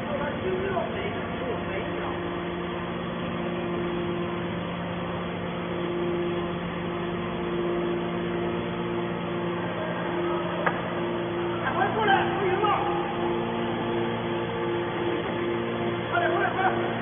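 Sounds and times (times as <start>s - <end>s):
baler engine humming: 0.0s - 17.0s.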